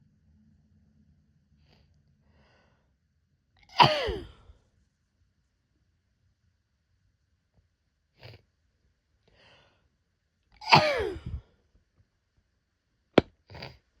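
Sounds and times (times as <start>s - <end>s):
woman sneezing: 3.7s - 4.4s, 10.6s - 11.4s.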